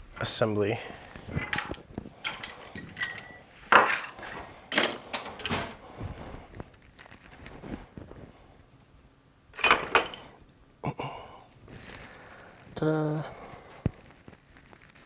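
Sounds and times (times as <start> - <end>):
metallic clanks and knocks: 1.4 - 5.9.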